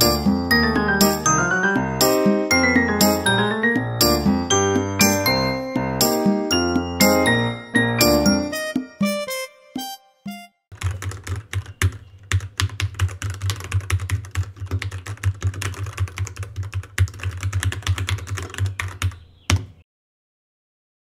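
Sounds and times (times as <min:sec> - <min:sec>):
mechanical keyboard typing: 0:10.7 - 0:19.7.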